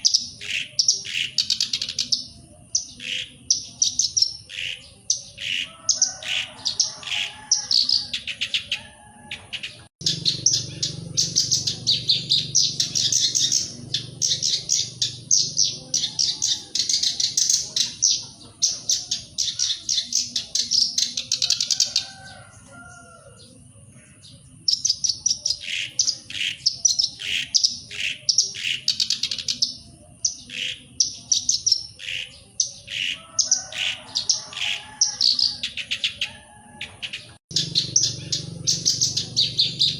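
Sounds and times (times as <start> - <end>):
warbler singing rapid high notes: 9.5 - 21.4, 37.2 - 39.9.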